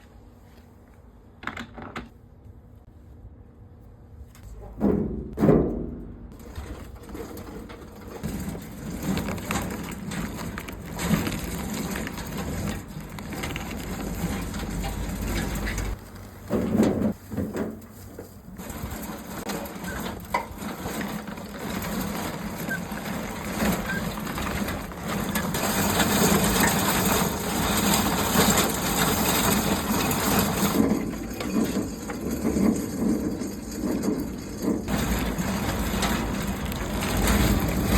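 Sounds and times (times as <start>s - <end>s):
loud knocks: 4.7s - 6.4s
grape crusher churning: 6.4s - 37.9s.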